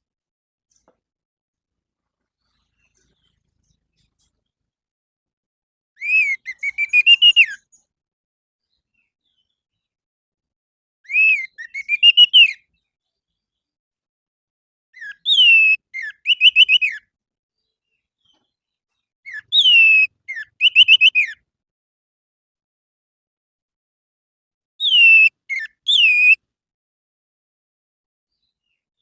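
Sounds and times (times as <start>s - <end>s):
thrush singing whistled notes: 6.0s - 7.6s, 11.1s - 12.6s, 15.0s - 17.0s, 19.3s - 21.4s, 24.8s - 26.4s.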